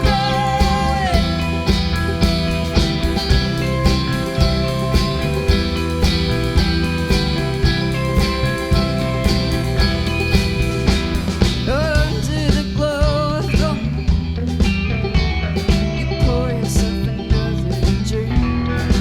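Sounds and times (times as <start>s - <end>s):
wavering vibrato melody: 0.0s - 11.9s
guitar and bass: 0.0s - 19.0s
steady drum beat: 0.0s - 19.0s.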